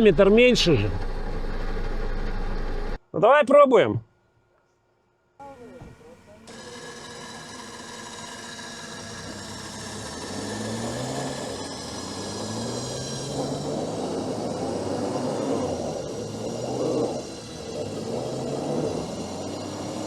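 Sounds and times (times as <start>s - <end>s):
engine revving: 0.0s - 3.0s, 5.5s - 20.0s
winch whining under load: 5.4s - 20.0s.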